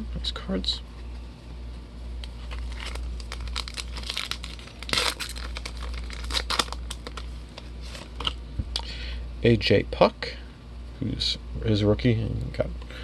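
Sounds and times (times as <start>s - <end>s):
card pack wrapper tearing and crinkling: 2.2s - 8.4s.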